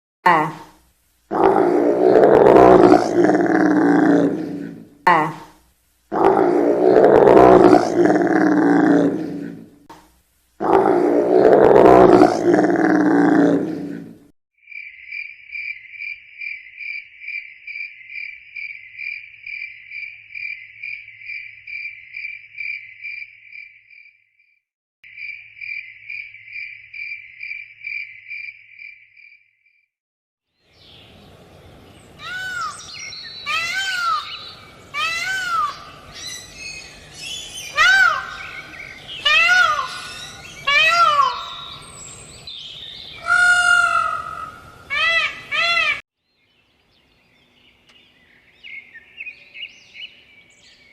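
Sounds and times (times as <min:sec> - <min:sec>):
loud animal roars: 0:01.3 - 0:05.5, 0:06.1 - 0:09.9, 0:10.6 - 0:14.3
bird calls: 0:30.7 - 0:50.9.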